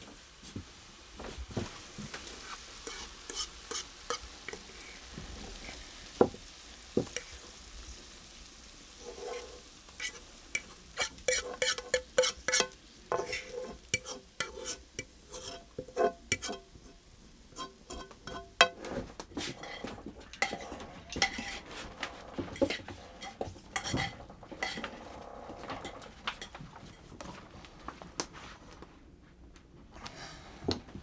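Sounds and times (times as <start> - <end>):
utensil scraping in a cooking pot: 2.2 - 6.4, 7.0 - 27.2.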